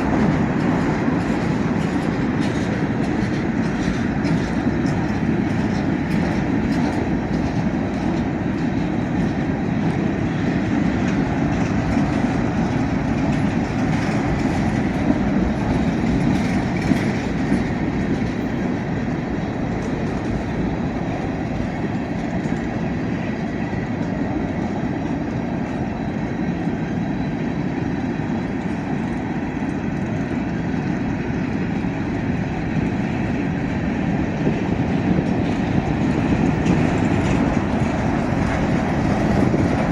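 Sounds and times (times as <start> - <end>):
freight train wheels rumbling: 0.0 - 39.9.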